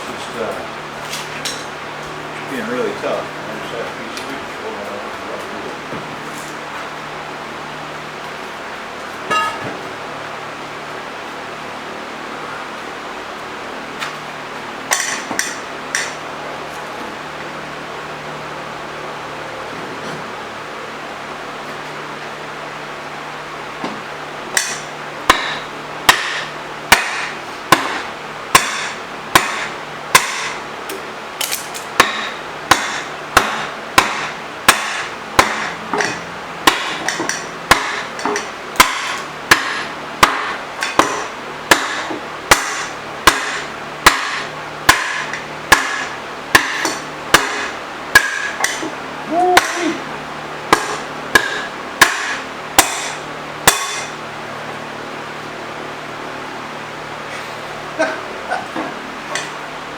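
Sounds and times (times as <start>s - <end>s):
hammer blows on metal: 9.3s - 9.8s, 32.0s - 50.1s, 50.7s - 54.2s.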